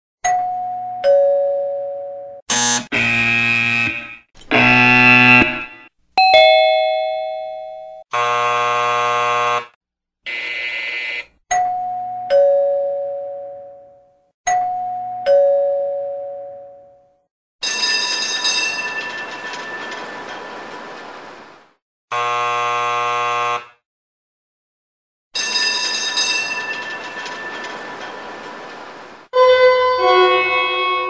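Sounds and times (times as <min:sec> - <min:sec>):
two-tone doorbell chime: 0:00.3 - 0:02.4, 0:06.2 - 0:08.9, 0:11.5 - 0:20.0, 0:25.4 - 0:28.2
electric doorbell buzzing: 0:02.5 - 0:11.7, 0:22.1 - 0:23.8.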